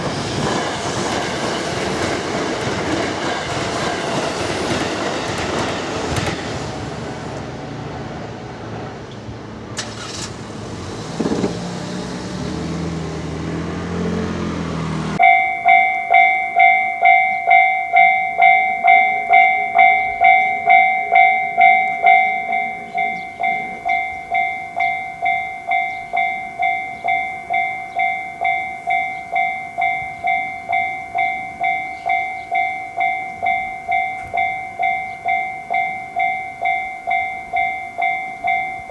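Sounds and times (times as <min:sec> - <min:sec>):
train running on rails: 0:00.0 - 0:38.9
level crossing bell ringing: 0:15.2 - 0:38.9.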